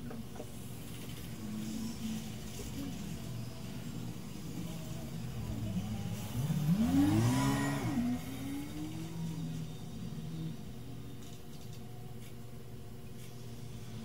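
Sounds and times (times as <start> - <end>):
motor whining: 1.2 - 10.7.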